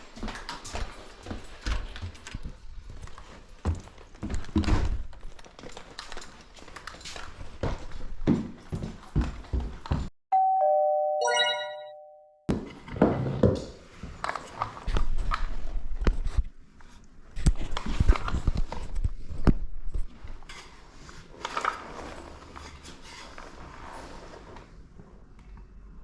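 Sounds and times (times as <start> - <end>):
two-note chime: 10.4 - 12.4.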